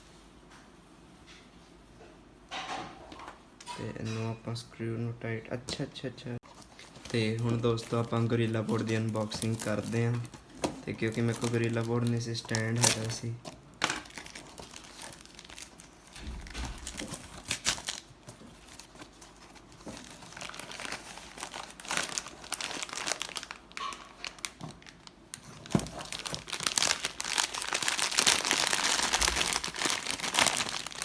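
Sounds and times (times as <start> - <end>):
packaging crinkling and tearing: 6.4 - 31.0.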